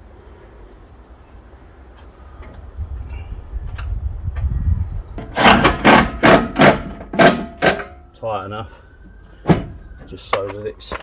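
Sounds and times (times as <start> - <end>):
ratchet spanner rasping: 5.2 - 7.9.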